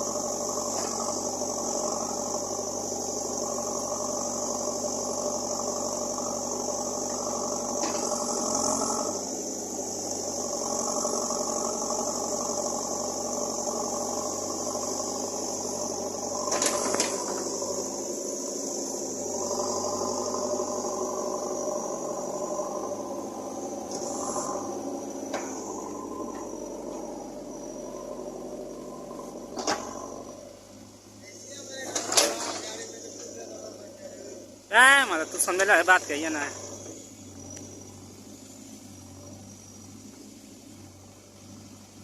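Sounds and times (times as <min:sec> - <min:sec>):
backhoe diesel engine running: 0:00.0 - 0:42.0.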